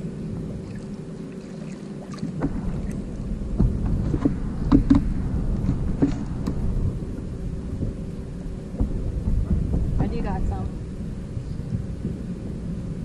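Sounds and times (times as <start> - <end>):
wind rumble on microphone: 0.0 - 13.0
hollow knocks on boat hull: 3.5 - 6.6.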